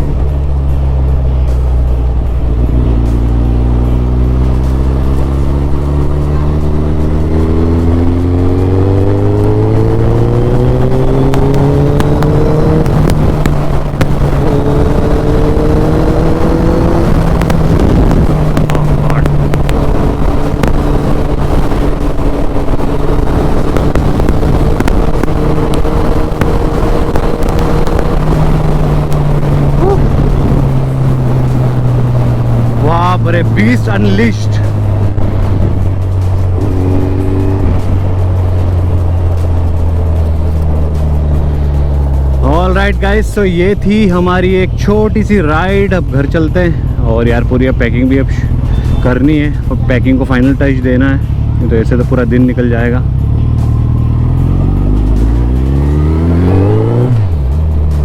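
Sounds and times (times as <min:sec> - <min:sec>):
motorcycle engine accelerating: 0:00.0 - 0:58.0.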